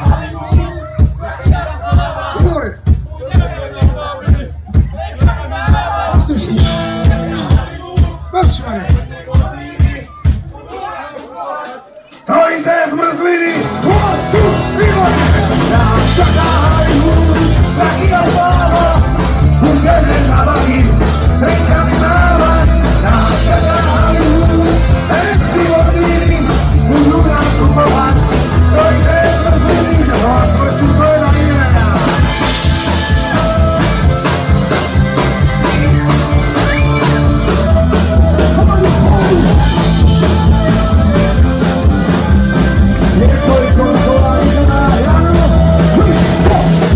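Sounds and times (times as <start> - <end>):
punk rock band playing live: 0.0 - 46.9
person singing: 10.8 - 46.9.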